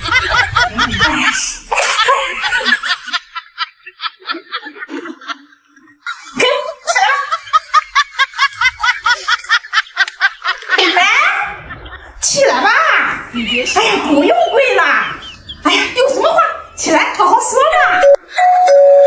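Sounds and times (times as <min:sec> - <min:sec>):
person laughing: 0:00.0 - 0:12.2.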